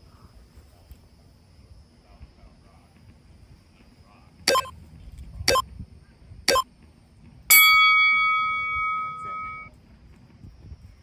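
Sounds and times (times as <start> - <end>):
long loud timer beep: 4.5 - 4.7, 7.5 - 9.7
short timer beeps: 4.5 - 4.7.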